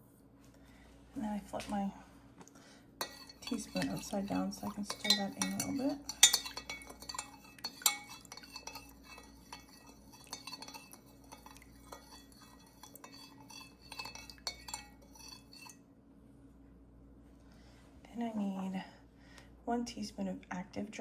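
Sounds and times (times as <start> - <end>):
teaspoon clinking against container: 3.0 - 15.8.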